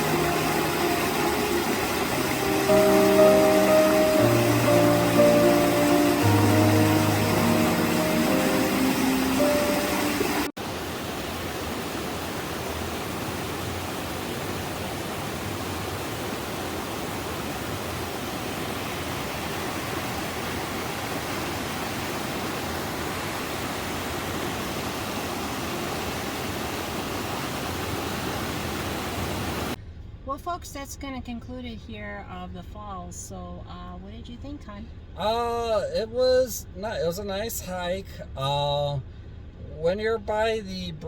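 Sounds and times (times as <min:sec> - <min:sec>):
water splashing over rocks: 0:00.0 - 0:29.8.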